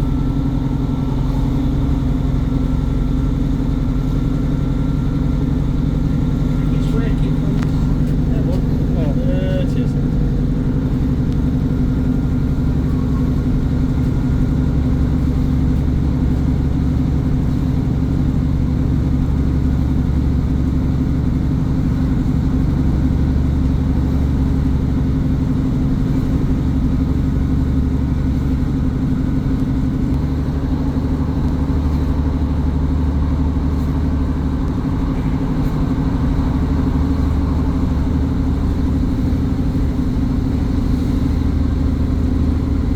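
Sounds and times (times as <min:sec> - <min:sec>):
train diesel engine running: 0:00.0 - 0:42.9.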